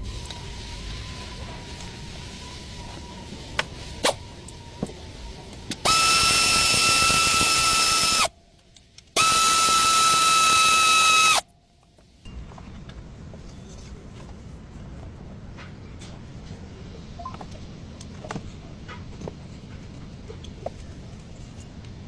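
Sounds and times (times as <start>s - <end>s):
power drill whining: 5.8s - 8.3s, 9.2s - 11.4s.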